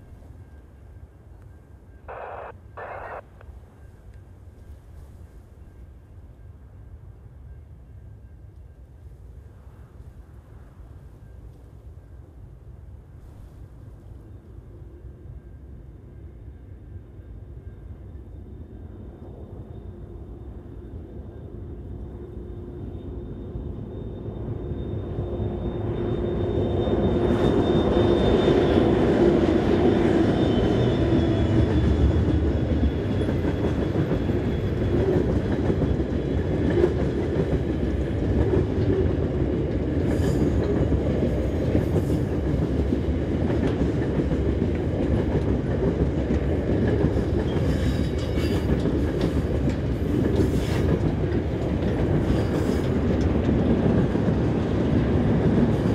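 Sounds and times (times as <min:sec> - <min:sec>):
diesel locomotives: 0:00.0 - 0:55.9
train wheels clattering on track: 0:25.7 - 0:55.9.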